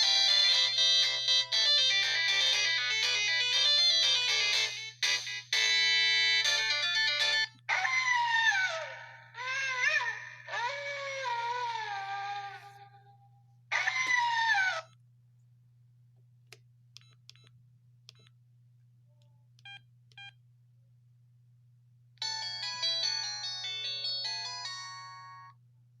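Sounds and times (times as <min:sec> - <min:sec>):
polyphonic ringtone melody: 0:00.0 - 0:07.6, 0:22.2 - 0:25.5.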